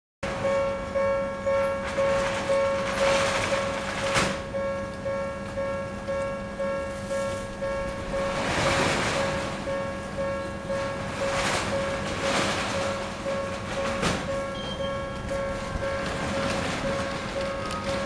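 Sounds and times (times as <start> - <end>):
level crossing warning bell: 0.2 - 18.0
rushing noise: 7.2 - 18.0.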